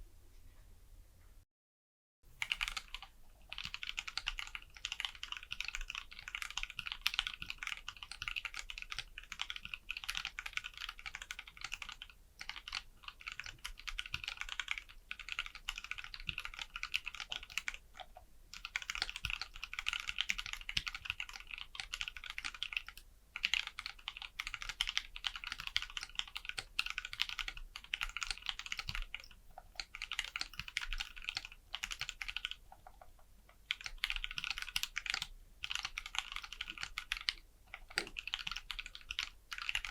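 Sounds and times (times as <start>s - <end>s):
mechanical keyboard typing: 2.4s - 39.9s.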